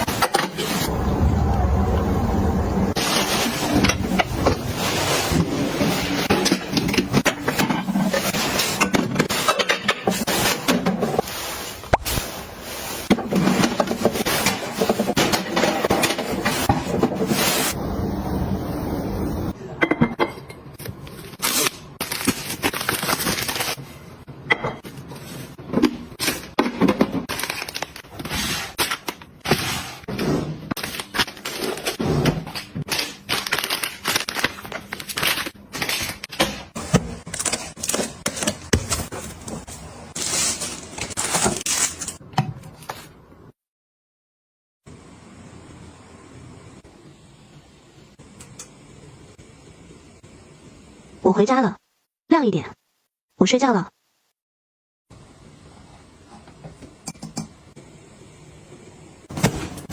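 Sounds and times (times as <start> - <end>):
crinkling and scraping: 2.9 - 17.8, 20.7 - 24.0, 24.8 - 43.2.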